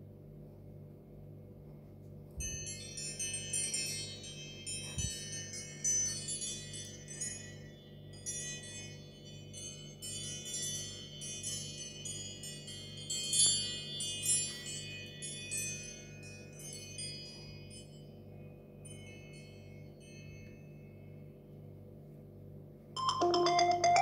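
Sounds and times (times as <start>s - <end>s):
ringtone chiming melody: 23.0s - 24.0s.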